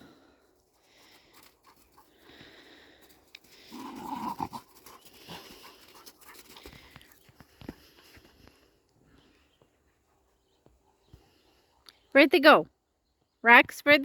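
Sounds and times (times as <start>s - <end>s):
dog panting: 1.0s - 8.4s.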